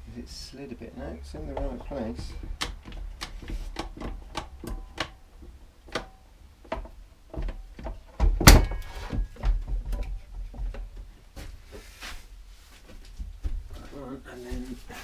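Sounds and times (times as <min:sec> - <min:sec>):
loud knock with metallic ring: 0:08.4 - 0:09.4.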